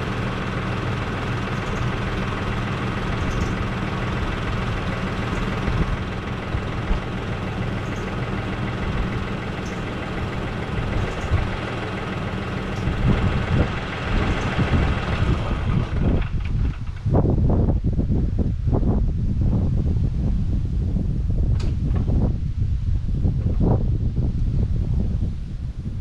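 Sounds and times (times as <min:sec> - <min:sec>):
tractor diesel engine idling: 0:00.0 - 0:17.9
wind buffeting microphone: 0:01.1 - 0:26.0.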